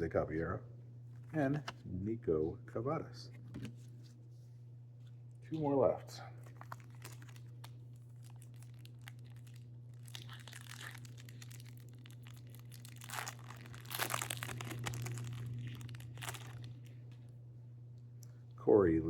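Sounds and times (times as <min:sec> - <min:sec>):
foil wrapper tearing and crinkling: 0:06.4 - 0:17.1.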